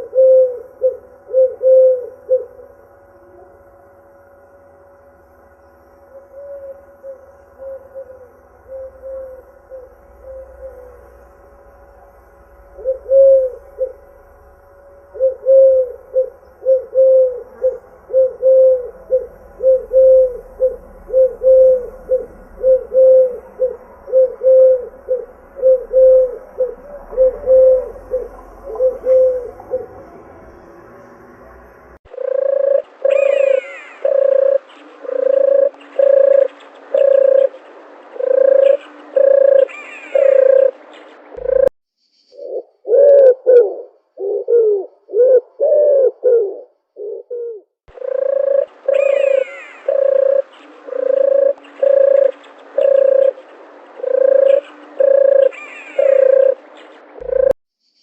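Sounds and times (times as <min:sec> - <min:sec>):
dove cooing: 0:00.0 - 0:03.6, 0:06.1 - 0:11.4, 0:12.6 - 0:14.2, 0:15.0 - 0:30.2, 0:32.1 - 0:41.7, 0:42.4 - 0:57.6
faint bird chirps: 0:05.2 - 0:58.0.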